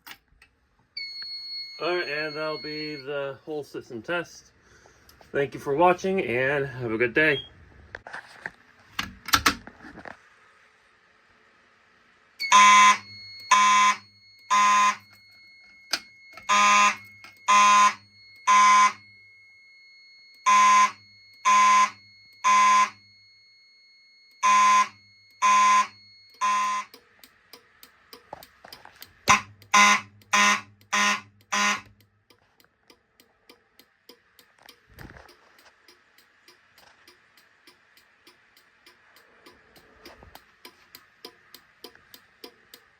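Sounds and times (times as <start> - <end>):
fire alarm horn pulses: 1.0 - 3.4, 12.4 - 15.2, 15.9 - 23.3, 24.0 - 27.0, 29.3 - 31.9
faint steady high tone: 1.0 - 4.5, 12.4 - 27.1.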